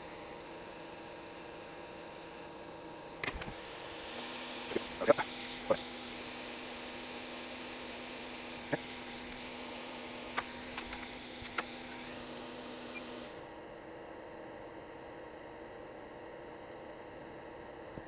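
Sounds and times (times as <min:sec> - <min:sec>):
electric fan humming: 0:00.0 - 0:13.9.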